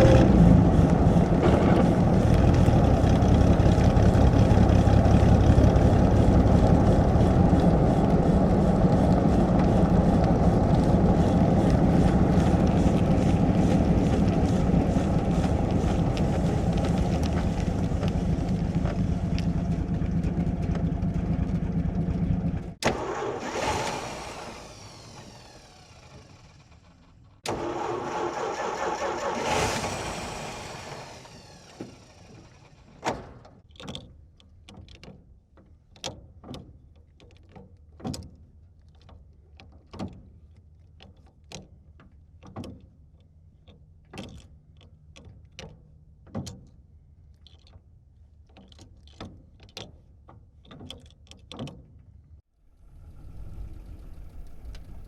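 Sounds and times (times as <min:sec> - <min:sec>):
car engine running: 0:00.0 - 0:33.0, 0:52.7 - 0:55.0
car starter cranking: 0:22.8 - 0:33.0.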